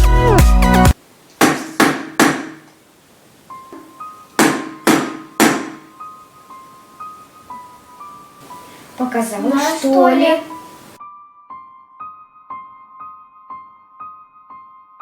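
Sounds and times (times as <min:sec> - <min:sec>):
knocking on a door: 0:01.4 - 0:02.6, 0:03.8 - 0:05.9.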